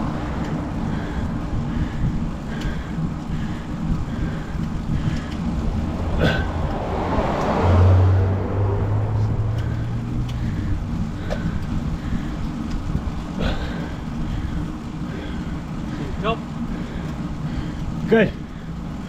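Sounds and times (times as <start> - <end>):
vehicle engine passing: 0.0 - 2.1, 3.6 - 13.0
steady low rumble: 0.0 - 19.0.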